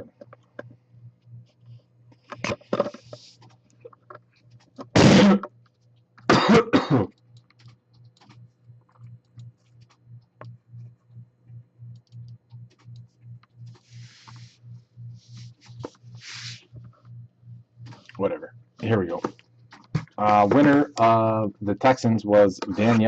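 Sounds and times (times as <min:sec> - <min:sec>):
person coughing: 0:06.3 - 0:07.1
low pulsing hum: 0:06.3 - 0:23.0.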